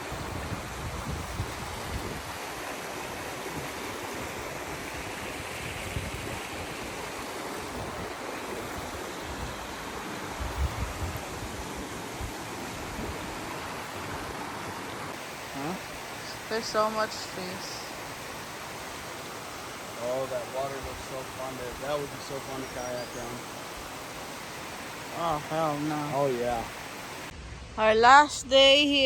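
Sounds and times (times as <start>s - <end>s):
wind buffeting microphone: 0.0s - 2.6s, 3.4s - 13.5s
flowing water rushing: 0.0s - 27.4s.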